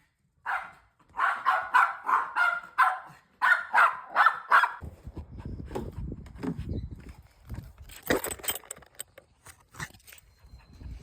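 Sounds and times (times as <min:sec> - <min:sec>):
dog barking: 0:00.4 - 0:04.8.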